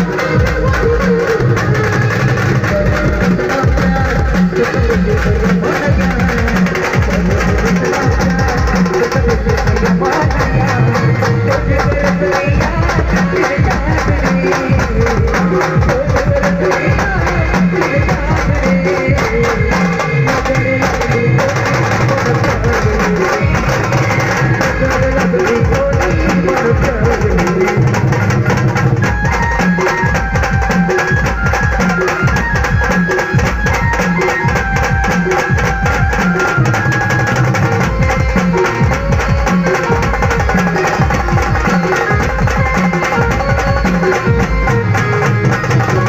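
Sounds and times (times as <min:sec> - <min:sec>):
driving drum beat: 0:00.0 - 0:46.0
melodic instrument line: 0:29.0 - 0:46.0.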